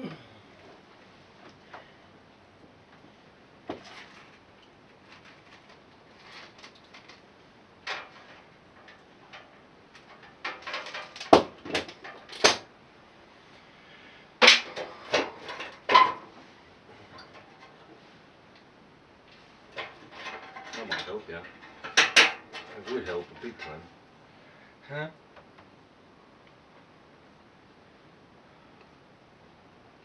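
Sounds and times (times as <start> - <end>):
metal tools knocking and clinking: 7.8 - 12.6, 19.8 - 23.8.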